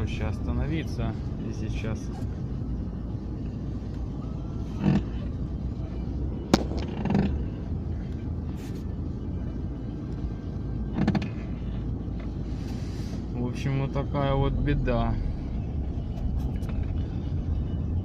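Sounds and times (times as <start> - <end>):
low engine rumble: 0.0 - 18.0
power steering creaking: 4.6 - 5.4, 6.8 - 8.8, 10.8 - 12.4.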